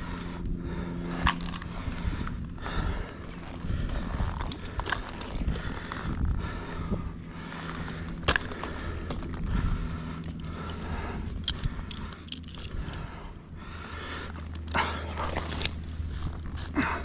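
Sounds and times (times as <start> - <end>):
rope rustling and scraping: 1.2 - 13.1, 14.2 - 17.0.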